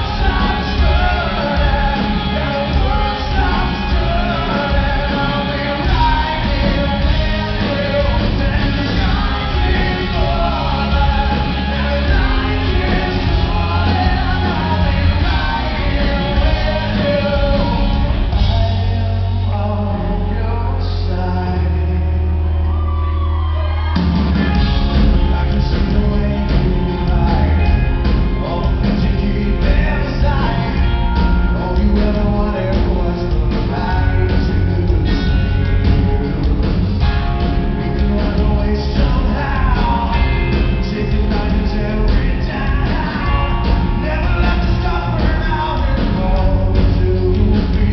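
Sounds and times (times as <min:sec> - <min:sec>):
man singing: 0:00.0 - 0:22.8, 0:24.5 - 0:47.9
live rock band playing: 0:00.0 - 0:47.9.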